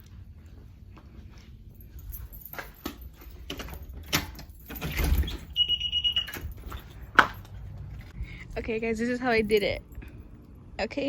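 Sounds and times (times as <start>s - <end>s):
things being handled: 1.5s - 10.7s
short high electronic beep: 5.6s - 6.4s.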